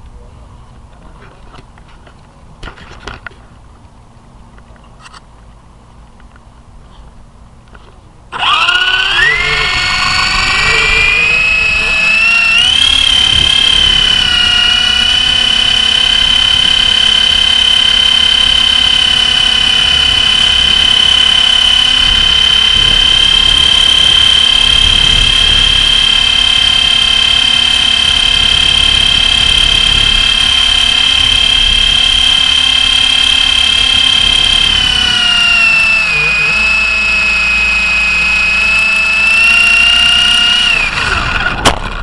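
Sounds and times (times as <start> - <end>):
rc helicopter whine: 8.3 - 42.0
wind on microphone: 9.3 - 15.5.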